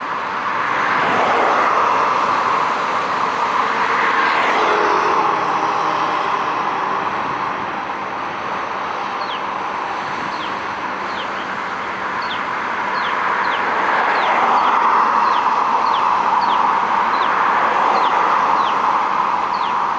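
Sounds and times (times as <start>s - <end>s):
passing traffic: 0.0s - 19.9s
bird chirping: 9.2s - 9.4s, 13.0s - 14.3s, 15.2s - 17.3s, 19.5s - 19.8s.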